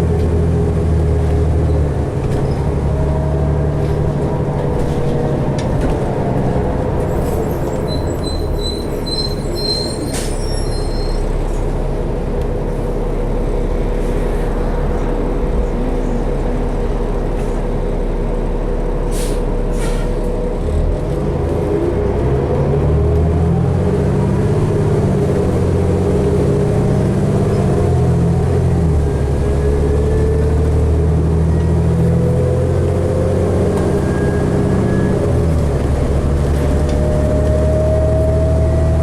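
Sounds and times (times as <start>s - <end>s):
bus engine and road rumble: 0.0s - 39.0s
high squeaks: 7.1s - 11.4s.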